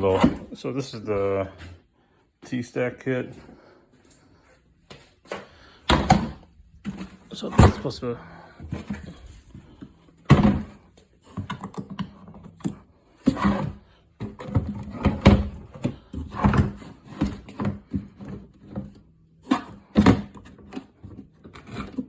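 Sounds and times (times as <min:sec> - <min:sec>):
plastic case thunks and clicks: 0:05.9 - 0:07.9, 0:10.2 - 0:10.8.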